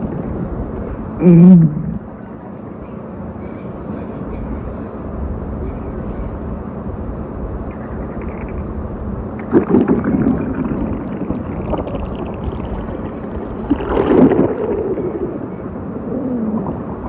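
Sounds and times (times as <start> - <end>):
steady background hiss: 0.0 - 17.0
stomach growling: 7.7 - 17.0.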